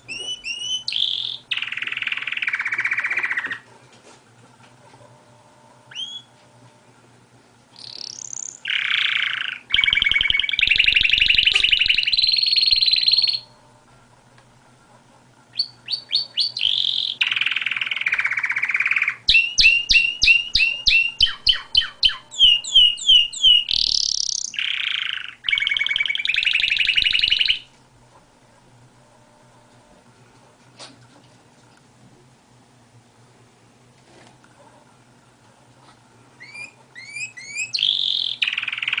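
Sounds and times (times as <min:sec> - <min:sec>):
canary singing trills: 0:00.0 - 0:03.6, 0:05.9 - 0:06.4, 0:07.8 - 0:13.7, 0:15.5 - 0:27.7, 0:36.4 - 0:39.0.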